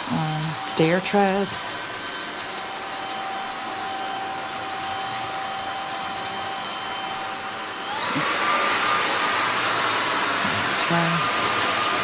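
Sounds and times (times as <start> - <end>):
cordless vacuum whining: 0.0 - 12.0.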